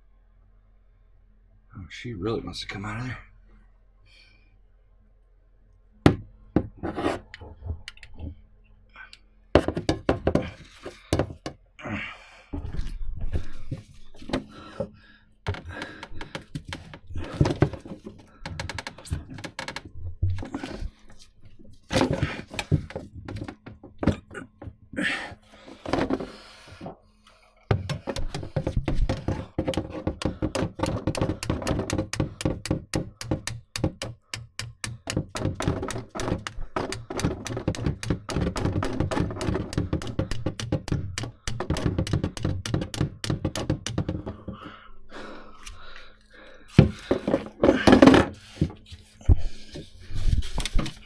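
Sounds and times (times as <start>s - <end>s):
hammer knocking on metal: 27.7s - 44.6s.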